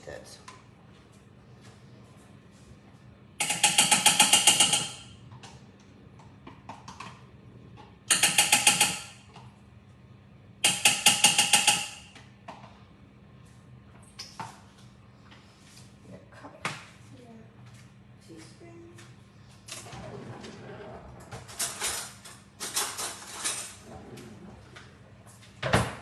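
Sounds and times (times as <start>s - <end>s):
kitchen appliance motor rattling: 3.4s - 5.1s.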